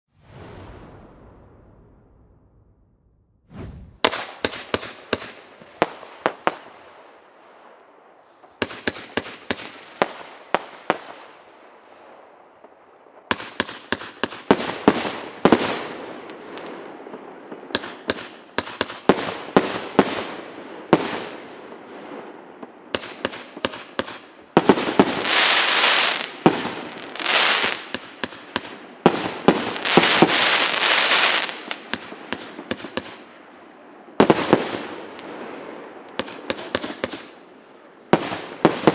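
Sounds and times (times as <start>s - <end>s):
fireworks rapid shots: 3.5s - 6.6s, 36.2s - 37.4s, 38.2s - 38.9s
dense firework crackling: 23.0s - 33.5s, 34.2s - 38.9s.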